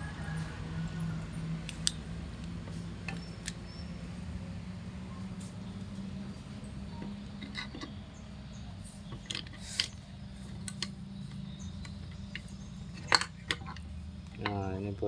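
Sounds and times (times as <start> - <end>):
metallic clicks and knocks: 7.0 - 8.0, 9.1 - 14.8.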